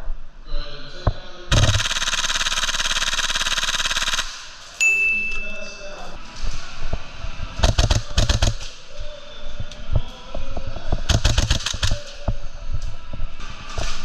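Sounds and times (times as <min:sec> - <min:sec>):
airsoft rifle full-auto burst: 0:01.5 - 0:04.5, 0:07.6 - 0:08.6, 0:11.1 - 0:12.1
metallic ding: 0:04.8 - 0:05.7.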